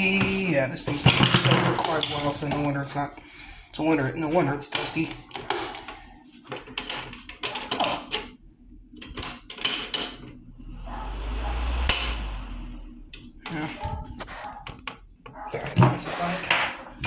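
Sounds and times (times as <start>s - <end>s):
rushing noise with low rumble: 10.3s - 14.3s.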